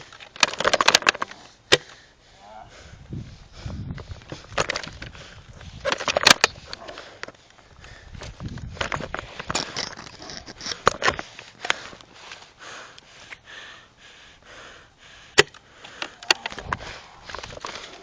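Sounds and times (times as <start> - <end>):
person breathing and sniffing: 1.2 - 18.0.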